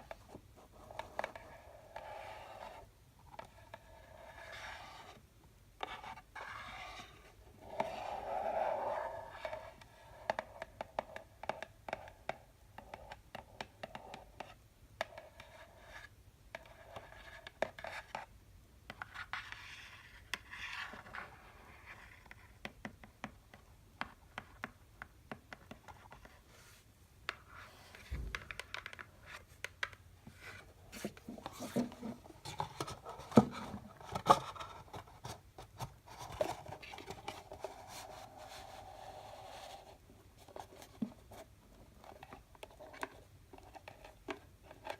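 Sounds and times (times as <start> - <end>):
scratching and rubbing on boxes: 0.0 - 5.2, 5.8 - 11.3, 30.2 - 44.9.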